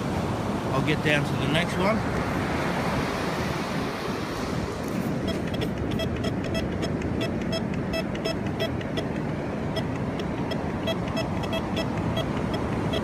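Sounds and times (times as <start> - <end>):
wind: 0.0 - 13.0
metal detector short beeps: 5.2 - 13.0.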